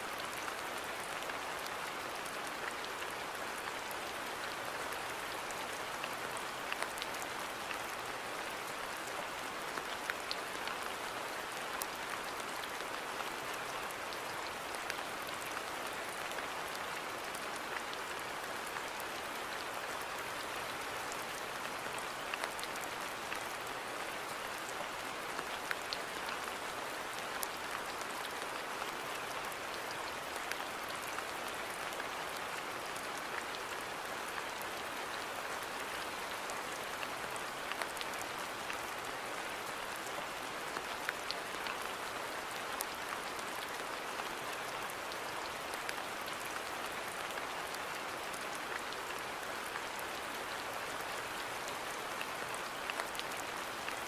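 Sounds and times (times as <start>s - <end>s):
steady rain hiss: 0.0s - 54.0s
raindrops ticking on surfaces: 0.1s - 54.0s.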